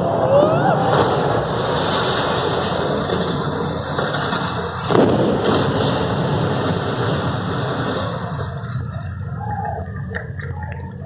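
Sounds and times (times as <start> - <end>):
sudden loud burst: 0.6 - 8.7.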